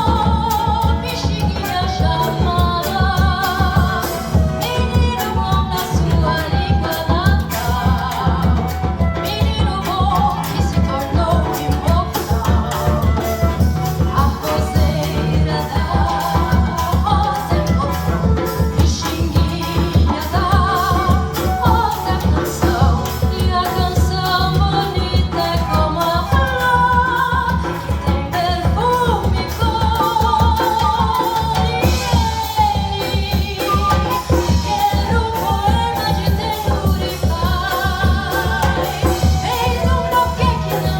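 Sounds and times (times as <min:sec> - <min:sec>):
acoustic guitar: 0:00.0 - 0:40.9
flute: 0:00.0 - 0:40.9
hand percussion: 0:00.0 - 0:40.9
woman singing: 0:00.0 - 0:40.9.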